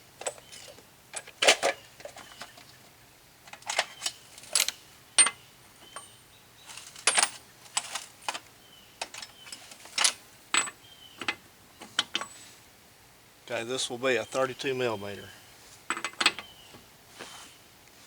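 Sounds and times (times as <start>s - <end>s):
metal hand tools clinking: 6.7s - 8.4s.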